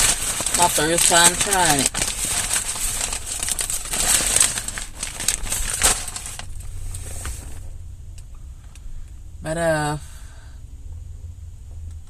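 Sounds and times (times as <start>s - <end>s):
food wrapper crinkling: 0.0s - 6.9s.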